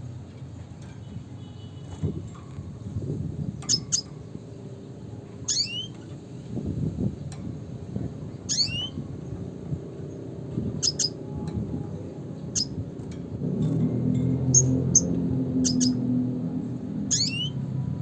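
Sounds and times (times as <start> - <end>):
bird chirping: 3.4 - 4.4, 5.4 - 6.2, 8.4 - 11.3, 12.4 - 12.8, 14.4 - 16.2, 17.0 - 17.6
low hum: 7.0 - 18.0.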